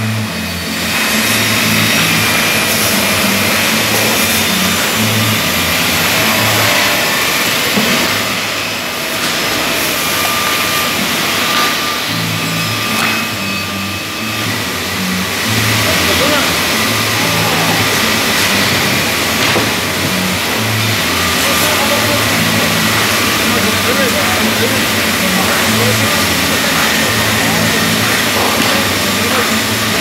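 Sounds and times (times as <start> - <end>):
rip saw running: 0.0 - 30.0
background music with bass line: 12.0 - 30.0.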